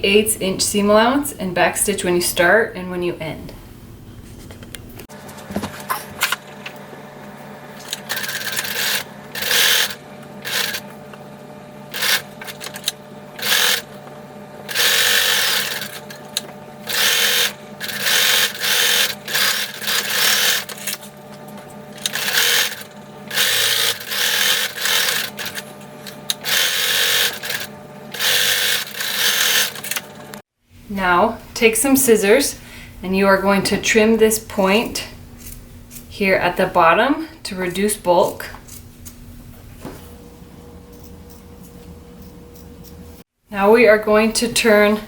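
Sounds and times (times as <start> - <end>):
sewing machine stitching: 7.8 - 10.9, 11.9 - 14.0, 14.7 - 30.4.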